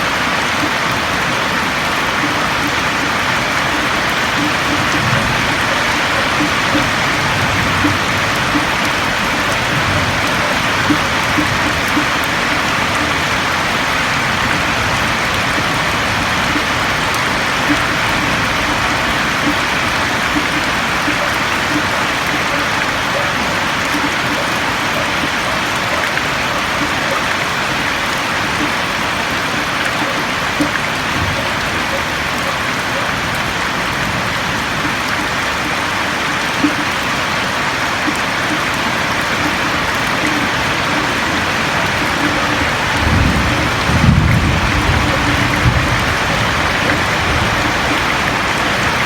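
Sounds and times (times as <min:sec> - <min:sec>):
heavy rain on a roof: 0:00.0 - 0:49.0.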